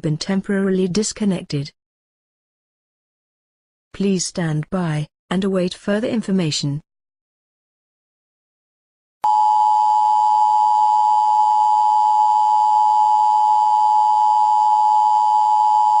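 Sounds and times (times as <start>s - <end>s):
loud steady electronic tone: 9.2s - 16.0s.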